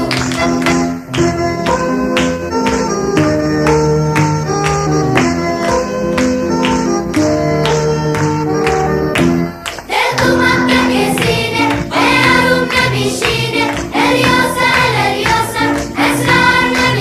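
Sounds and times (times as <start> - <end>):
song with vocals over beat: 9.8 - 17.0.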